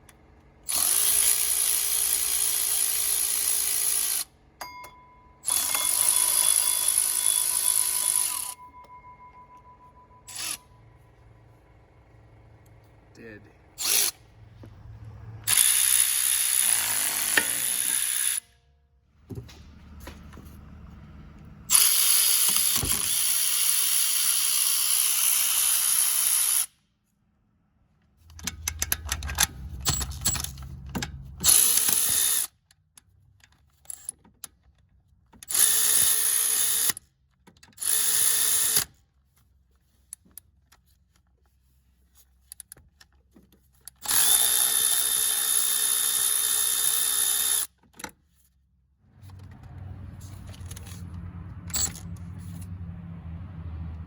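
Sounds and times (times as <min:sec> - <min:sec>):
cordless ratchet motor whirring: 0:00.6 - 0:04.3, 0:05.4 - 0:08.6, 0:10.3 - 0:10.7, 0:13.8 - 0:14.3, 0:15.4 - 0:18.5, 0:21.7 - 0:26.8, 0:28.3 - 0:32.6, 0:35.4 - 0:37.1, 0:37.7 - 0:39.0, 0:43.8 - 0:47.8.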